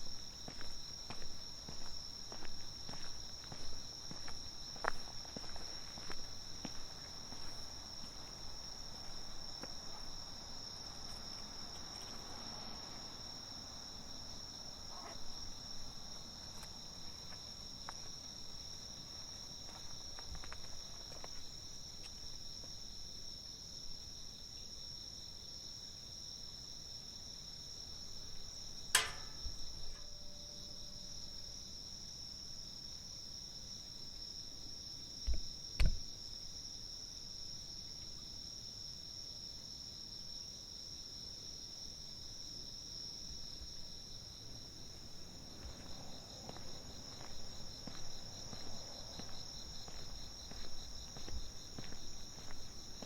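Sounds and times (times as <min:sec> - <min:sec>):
footsteps: 0:00.0 - 0:10.2, 0:45.0 - 0:53.0
insects trilling: 0:00.0 - 0:53.0
sharp click: 0:29.0 - 0:30.1.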